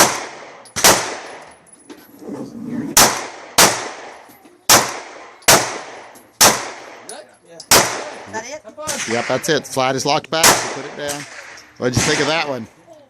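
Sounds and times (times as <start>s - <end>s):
pistol shots: 0.0s - 1.5s, 3.0s - 7.1s, 7.7s - 8.3s, 10.4s - 12.6s.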